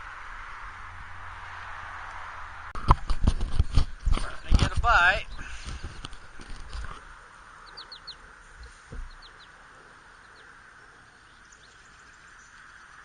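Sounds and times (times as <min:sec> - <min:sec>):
steady background hiss: 0:04.8 - 0:13.0
small bird chirping: 0:07.5 - 0:13.0
dull thump: 0:08.6 - 0:09.2.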